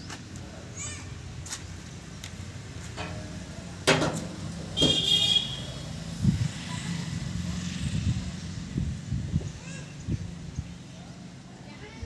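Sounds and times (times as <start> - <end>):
vehicle horn tooting: 4.8 - 5.8.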